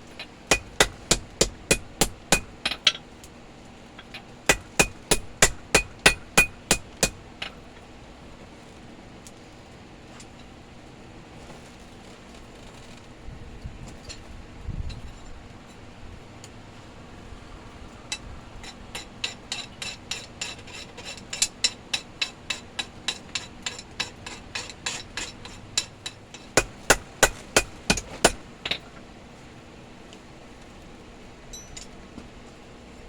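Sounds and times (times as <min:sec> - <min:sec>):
hammer striking steel on anvil: 0:00.1 - 0:03.0, 0:04.0 - 0:07.7, 0:18.1 - 0:28.8.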